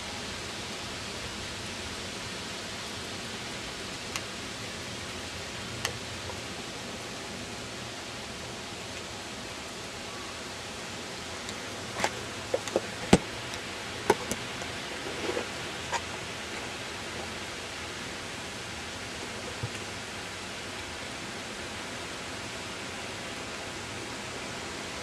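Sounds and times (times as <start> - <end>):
snowstorm ambience hiss: 0.0 - 25.0
sharp clicks and knocks: 12.0 - 16.1.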